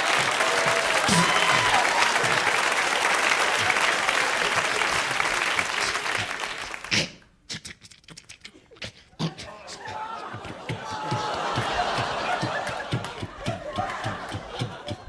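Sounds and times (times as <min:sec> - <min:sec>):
audience applauding: 0:00.0 - 0:07.0, 0:10.0 - 0:15.0
scattered claps: 0:00.0 - 0:07.2, 0:10.5 - 0:15.0.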